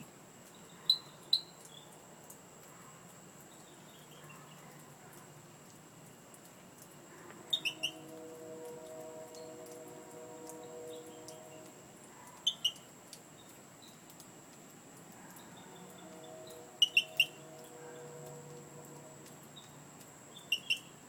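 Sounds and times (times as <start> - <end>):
sharp high-pitched animal calls: 7.5 - 8.1, 12.3 - 12.9, 16.8 - 17.4, 20.5 - 20.9.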